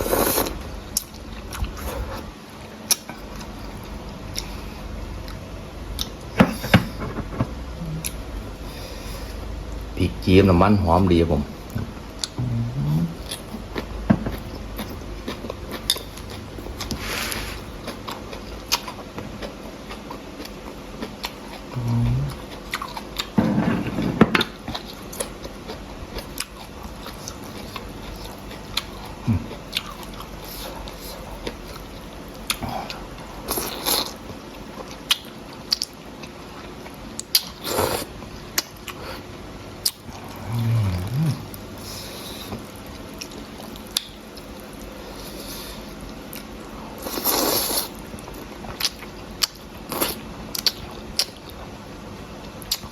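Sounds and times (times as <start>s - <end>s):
wet chewing: 24.4s - 39.0s, 39.8s - 51.6s.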